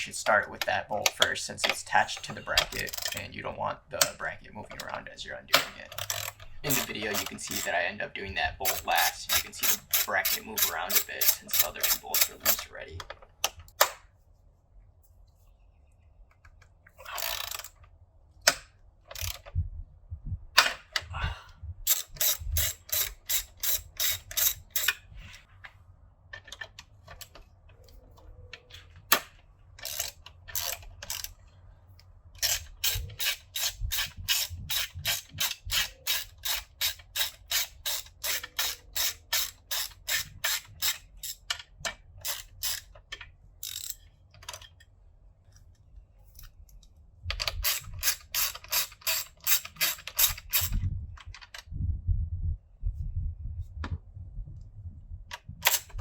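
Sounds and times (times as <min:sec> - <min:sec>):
socket ratchet clicking: 0:01.0 - 0:03.3, 0:04.8 - 0:07.7, 0:08.6 - 0:12.7, 0:17.1 - 0:17.8, 0:18.5 - 0:19.6, 0:21.9 - 0:25.0, 0:29.1 - 0:31.4, 0:32.4 - 0:43.0, 0:43.6 - 0:44.8, 0:47.4 - 0:51.6, 0:55.4 - 0:56.0.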